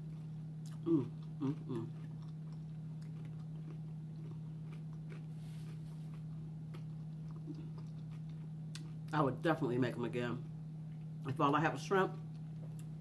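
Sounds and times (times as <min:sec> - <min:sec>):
quiet chewing: 0:00.0 - 0:09.2
steady low hum: 0:00.0 - 0:13.0.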